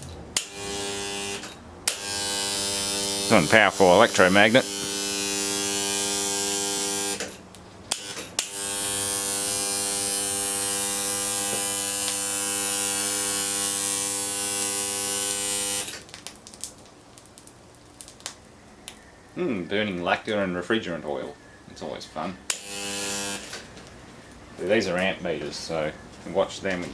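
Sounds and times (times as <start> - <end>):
loud electrical motor hum: 0.0 - 16.0, 22.5 - 23.9.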